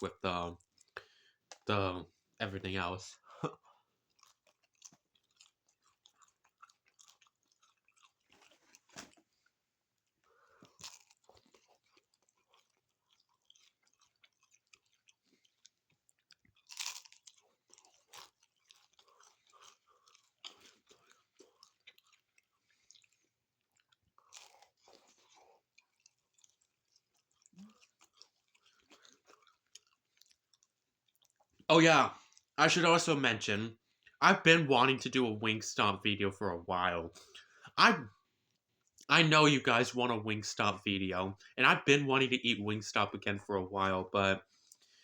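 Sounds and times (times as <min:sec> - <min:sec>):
crunching on taco shell: 0:03.4 - 0:32.6.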